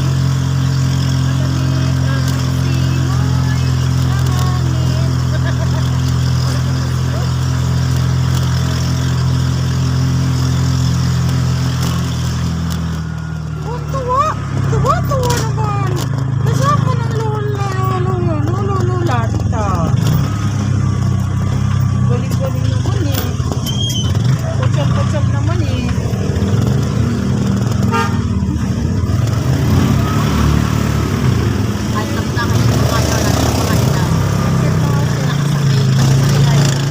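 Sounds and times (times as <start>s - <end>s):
motor running steadily: 0.0s - 36.9s
vehicle engine rumbling: 0.0s - 36.9s
vehicle horn toot: 27.8s - 28.5s.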